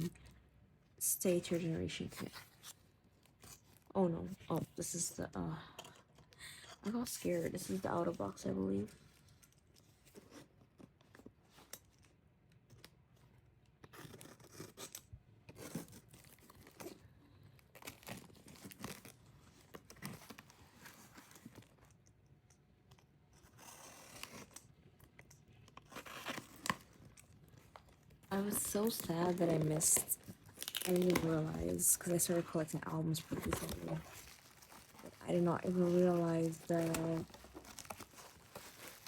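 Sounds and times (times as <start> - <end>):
small clicks and scrapes: 8.9 - 32.3
packaging tearing and rustling: 13.8 - 22.1, 23.4 - 39.0.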